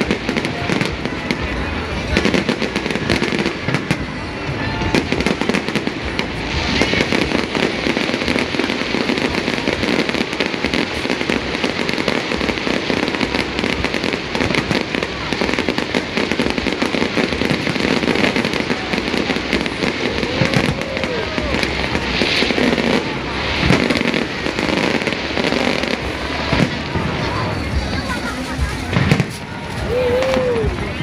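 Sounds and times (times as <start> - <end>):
fireworks bangs and crackles: 0.0 - 31.0.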